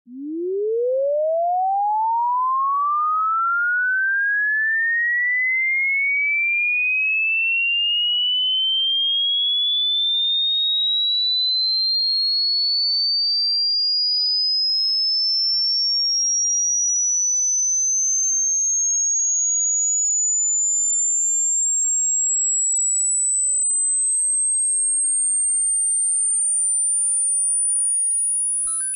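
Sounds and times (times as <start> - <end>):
rising electronic test tone: 0.1 - 4.6, 23.5 - 28.9.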